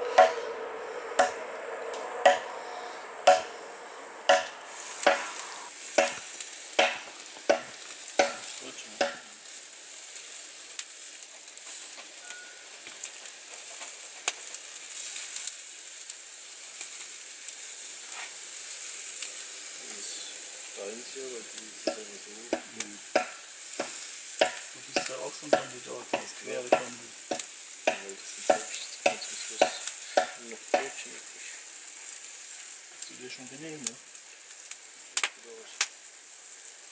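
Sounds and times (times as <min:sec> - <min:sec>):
axe chopping firewood: 0:00.2 - 0:00.4, 0:01.2 - 0:01.4, 0:02.2 - 0:02.5, 0:03.3 - 0:03.5, 0:04.3 - 0:05.3, 0:06.0 - 0:09.2, 0:21.9 - 0:30.9
sizzling hiss with crackles: 0:02.6 - 0:36.9.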